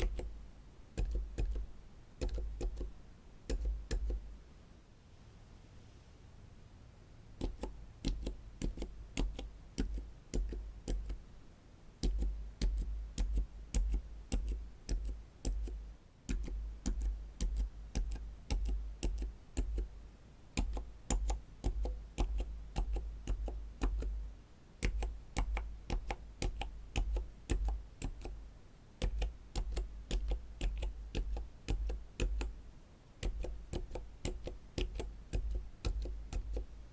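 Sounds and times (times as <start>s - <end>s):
muffled keyboard clicks: 0.0s - 4.3s, 7.4s - 11.2s, 12.0s - 19.9s, 20.6s - 24.2s, 24.8s - 28.4s, 29.0s - 32.6s, 33.2s - 36.8s.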